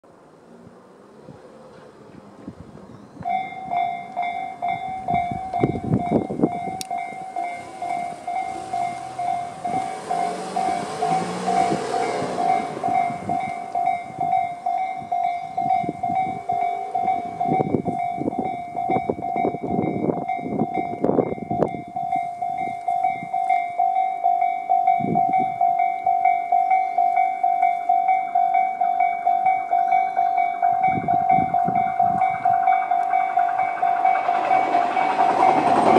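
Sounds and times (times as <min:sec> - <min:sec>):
rush of train noise: 0:00.0 - 0:35.9
train wheels clacking over rail joints: 0:03.2 - 0:20.0, 0:31.4 - 0:35.9
level-crossing warning bell: 0:03.2 - 0:35.9.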